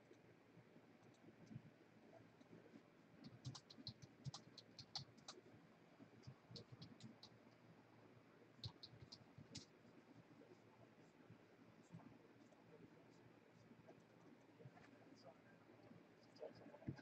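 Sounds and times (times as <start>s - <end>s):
faint small clicks: 3.2s - 5.4s, 6.2s - 7.6s, 8.6s - 9.8s.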